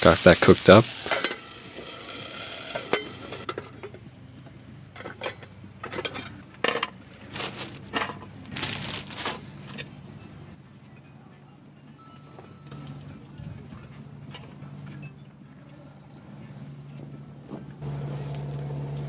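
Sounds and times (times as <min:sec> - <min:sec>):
meat sizzling in a frying pan: 0:00.0 - 0:03.4
utensil scraping a pan: 0:00.1 - 0:03.4.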